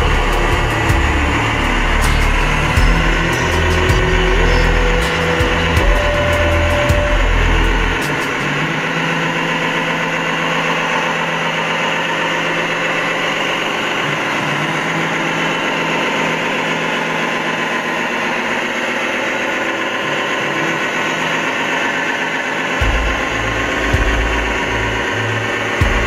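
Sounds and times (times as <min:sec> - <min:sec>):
toy vehicle engine idling: 0:00.0 - 0:26.0.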